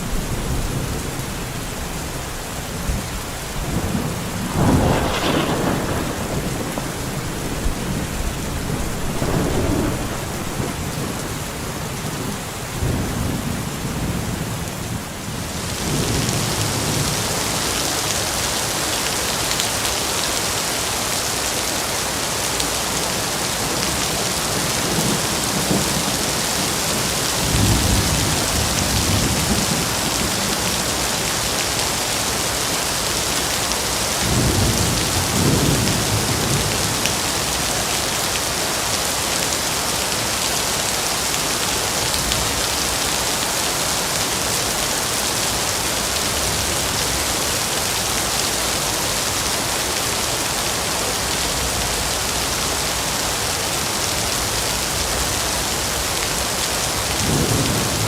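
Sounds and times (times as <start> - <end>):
low thunder rumbles: 0.0 - 17.2, 24.6 - 31.3, 33.3 - 37.9, 57.0 - 58.0
steady rain: 0.0 - 58.0.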